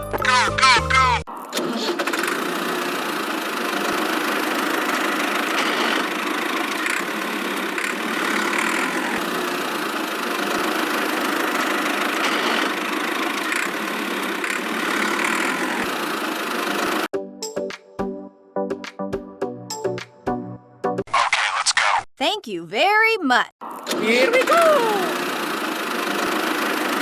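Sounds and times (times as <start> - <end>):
motor whirring steadily: 24.0 - 27.0.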